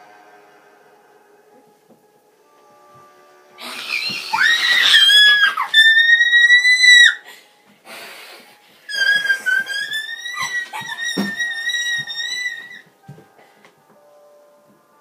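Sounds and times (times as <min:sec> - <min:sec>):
high-pitched screams: 0:03.6 - 0:07.2, 0:08.9 - 0:12.9.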